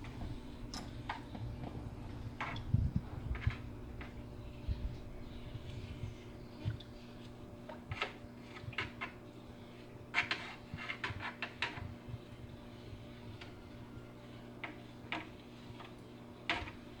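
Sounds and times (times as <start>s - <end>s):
steady low hum: 0.0s - 17.0s
scraper scraping aquarium glass: 7.0s - 17.0s.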